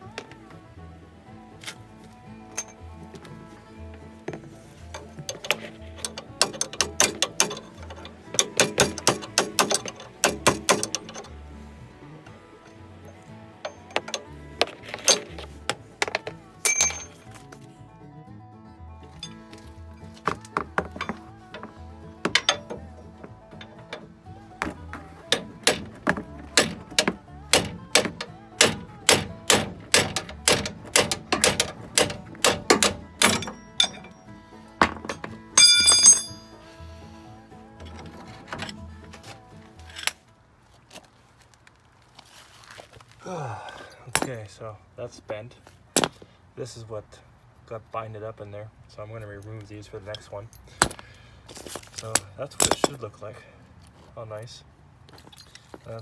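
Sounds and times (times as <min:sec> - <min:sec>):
background music with bass: 0:00.0 - 0:40.2
hand tools clicking: 0:04.3 - 0:11.4, 0:13.6 - 0:17.4, 0:19.1 - 0:36.6, 0:37.8 - 0:40.2
hammer striking metal: 0:05.0 - 0:11.3, 0:13.7 - 0:17.2, 0:20.2 - 0:36.6.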